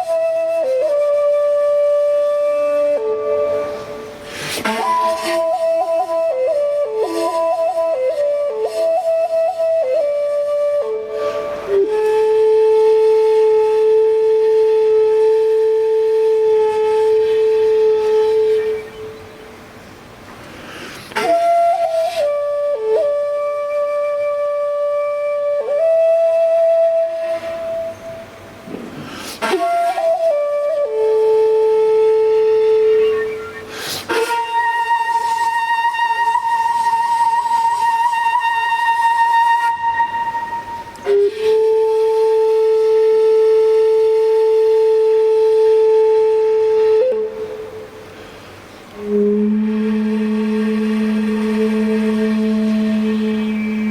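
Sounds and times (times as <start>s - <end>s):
flute melody: 0.0s - 19.5s, 21.1s - 48.3s, 48.9s - 53.9s
flute player breath: 3.6s - 5.6s, 11.0s - 11.9s, 20.4s - 21.4s, 27.2s - 29.7s, 33.4s - 34.4s, 40.0s - 41.7s, 47.9s - 49.4s.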